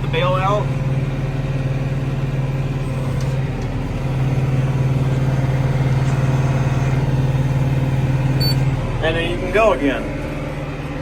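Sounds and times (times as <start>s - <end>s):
tractor engine running: 0.0s - 11.0s.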